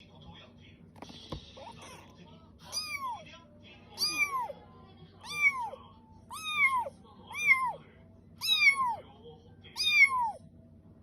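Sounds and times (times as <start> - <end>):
kitten meowing: 2.6 - 3.2, 4.0 - 4.6, 5.2 - 7.8, 8.4 - 9.0, 9.8 - 10.4.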